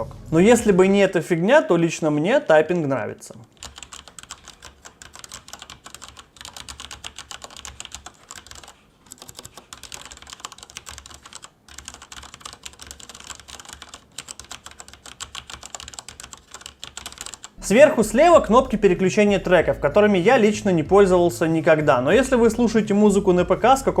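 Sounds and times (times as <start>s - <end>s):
fast mechanical keyboard typing: 3.5s - 17.6s.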